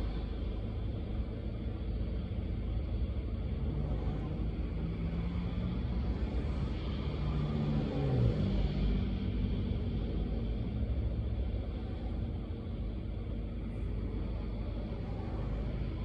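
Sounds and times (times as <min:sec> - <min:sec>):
car engine and tyres rumbling: 0:00.0 - 0:16.0.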